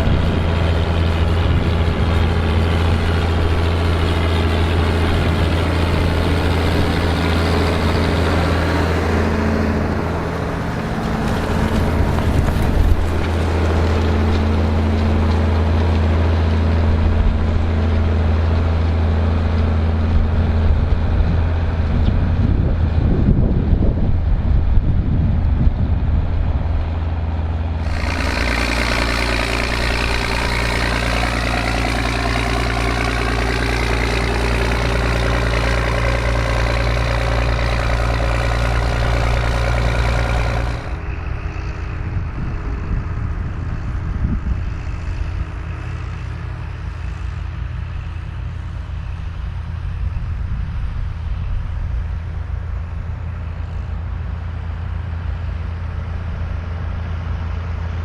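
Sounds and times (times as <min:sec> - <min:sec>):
tractor engines running: 0:00.0 - 0:58.0.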